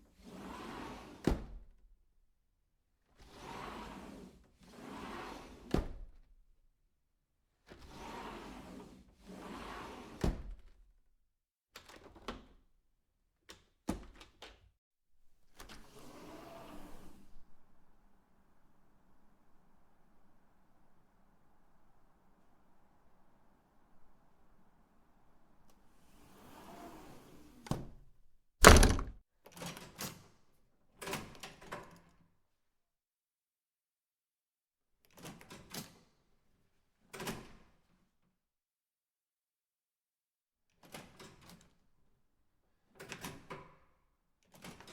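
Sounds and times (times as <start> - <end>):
door latch and handle clicks: 28.6 - 29.2
door shutting thud: 28.6 - 29.2
door swishing: 28.6 - 29.2
light knocks and clunks: 28.6 - 29.2.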